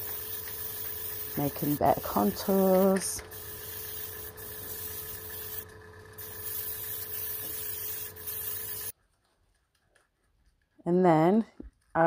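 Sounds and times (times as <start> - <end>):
airbrush hissing: 0.0 - 8.9
steady hum: 0.0 - 8.9.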